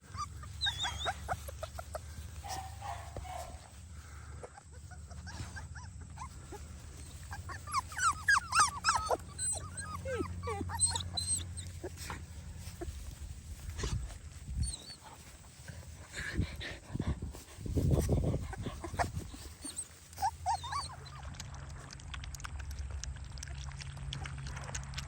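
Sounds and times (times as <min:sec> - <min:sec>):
puppies whimpering and yipping: 0:00.0 - 0:21.6
low steady hum: 0:00.0 - 0:25.0.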